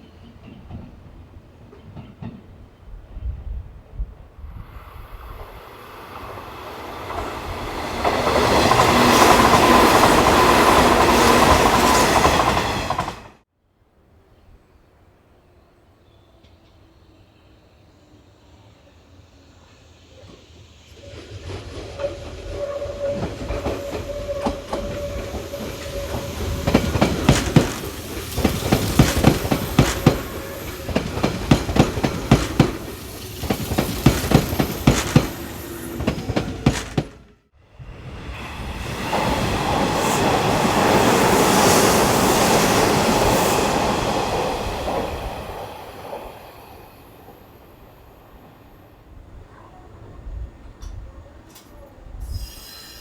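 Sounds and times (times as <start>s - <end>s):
train passing with rushing noise: 0.0s - 13.4s, 16.5s - 51.4s
train wheels clattering over rail joints: 21.2s - 37.3s.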